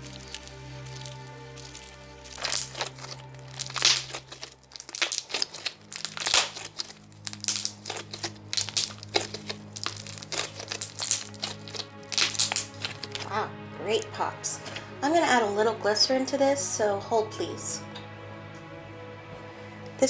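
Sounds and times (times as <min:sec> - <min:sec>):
slime popping and crackling: 0:00.0 - 0:14.8
background music: 0:00.0 - 0:20.0.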